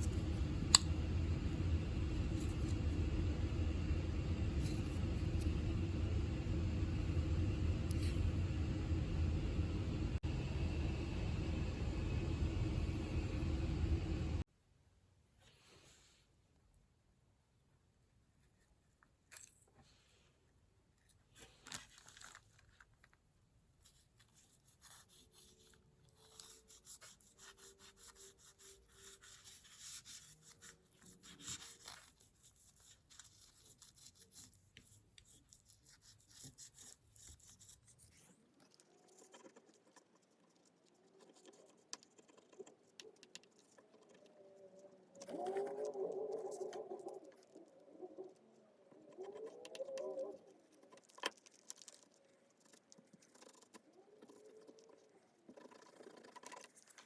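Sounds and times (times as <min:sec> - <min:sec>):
faint scraping and rubbing: 0:00.0 - 0:10.2.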